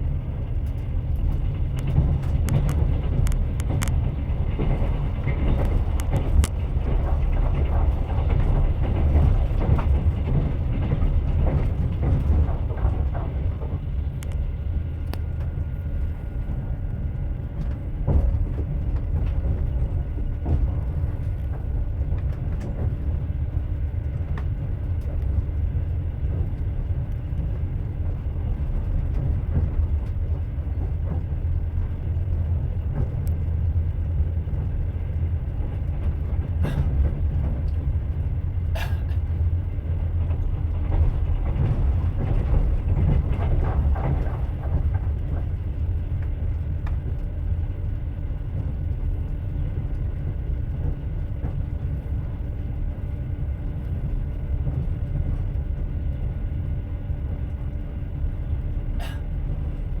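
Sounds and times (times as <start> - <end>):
train wheels rumbling on rails: 0.0 - 60.0
sharp clicks and knocks: 0.6 - 14.4.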